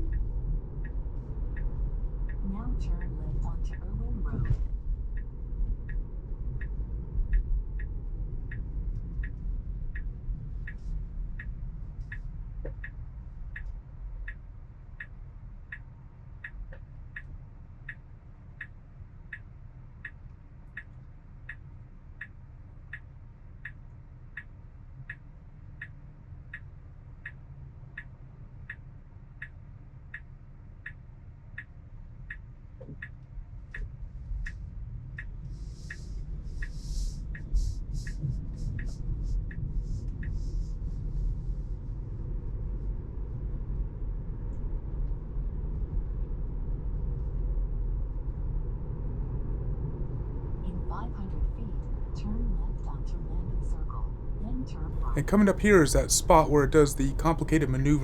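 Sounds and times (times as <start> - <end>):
car turn signal ticking: 0.0 - 14.4, 32.3 - 34.6
low road rumble: 0.0 - 52.4, 53.0 - 58.0.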